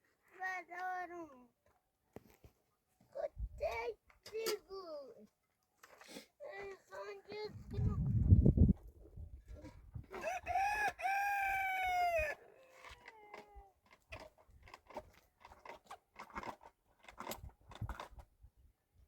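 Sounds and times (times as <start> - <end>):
rooster crowing: 10.2 - 12.9.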